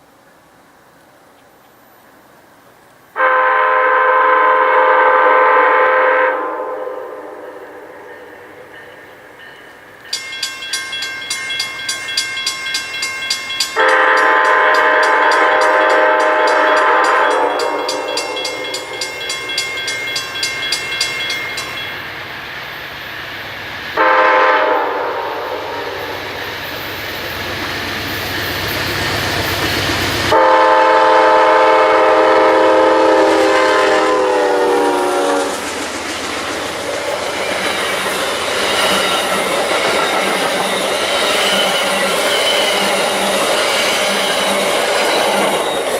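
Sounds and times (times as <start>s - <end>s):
locomotive chime horn: 3.2s - 22.0s, 24.0s - 26.2s, 30.2s - 35.5s
train wheels on rails: 5.3s - 45.9s
crossing bell ringing: 7.6s - 22.4s, 37.2s - 45.9s.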